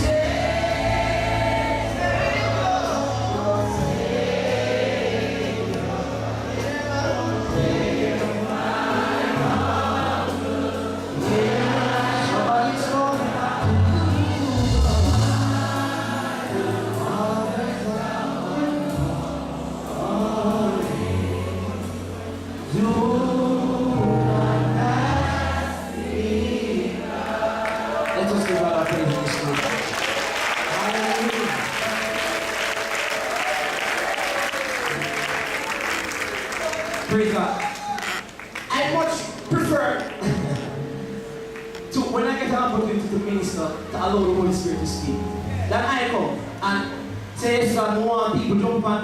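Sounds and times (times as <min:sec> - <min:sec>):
live band playing: 0:00.0 - 0:26.9, 0:28.6 - 0:48.5
sustained bass notes: 0:00.0 - 0:27.2
gospel choir singing: 0:00.0 - 0:37.5.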